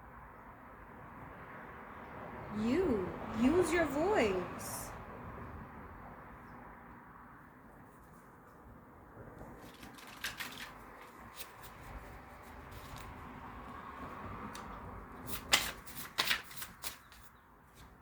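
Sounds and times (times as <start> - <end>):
cards shuffling rustle: 9.5 - 13.2, 14.6 - 17.9.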